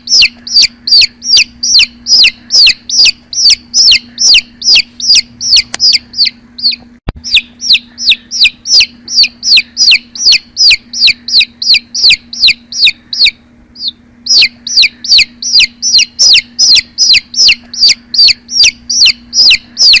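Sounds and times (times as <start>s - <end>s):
chicks peeping: 0.0s - 20.0s
faint steady hum: 0.0s - 20.0s.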